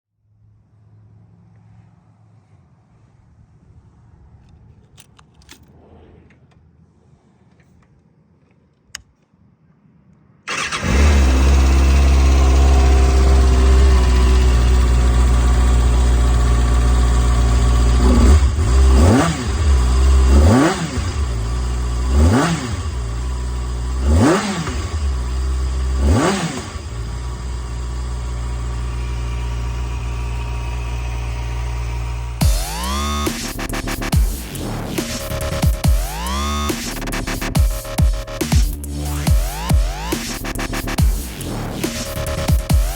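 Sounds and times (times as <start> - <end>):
motorcycle engine idling and revving: 10.5 - 42.9.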